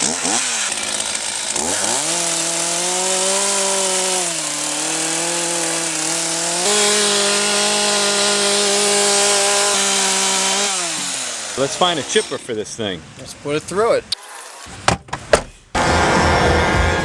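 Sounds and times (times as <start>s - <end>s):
small engine revving: 0.0s - 12.3s, 15.8s - 17.0s.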